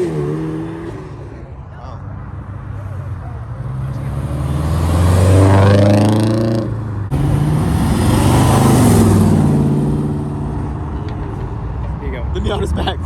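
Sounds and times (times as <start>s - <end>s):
car engine revving by: 3.6s - 10.5s.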